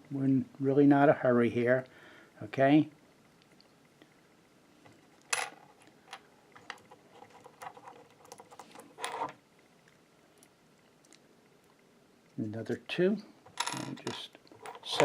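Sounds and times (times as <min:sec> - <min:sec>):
metal washers clattering: 0:13.5 - 0:15.0
metal washers clinking: 0:13.5 - 0:15.0.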